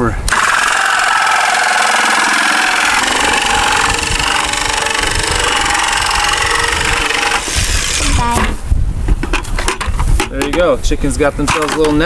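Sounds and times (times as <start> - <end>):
jigsaw cutting plastic: 0.3 - 8.6.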